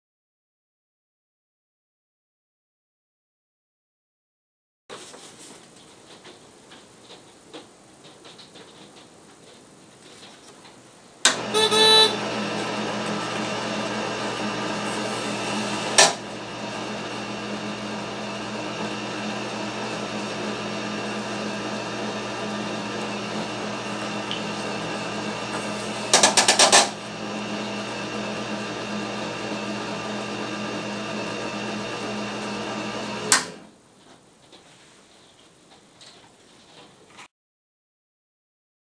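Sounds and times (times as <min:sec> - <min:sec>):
optical mark reader running: 0:11.3 - 0:17.0, 0:21.4 - 0:30.7.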